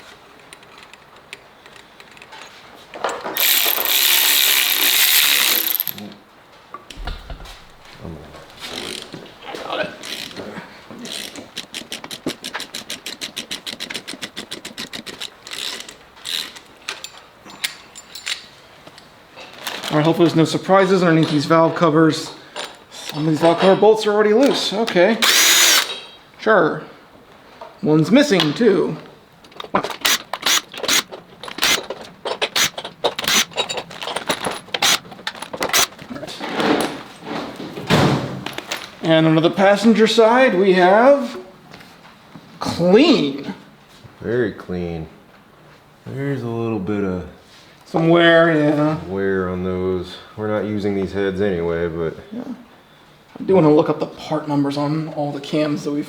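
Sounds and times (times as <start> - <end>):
tools and parts scraping: 0.1 - 6.2, 7.0 - 9.3, 9.9 - 18.6, 25.2 - 26.3, 29.5 - 37.6
ratchet wrench clicking: 3.4 - 6.0, 10.0 - 10.4, 11.1 - 16.6, 25.2 - 26.0, 30.0 - 33.6, 34.8 - 35.0, 35.7 - 35.9
bolts clinking against metal: 11.1 - 19.1, 29.4 - 36.0.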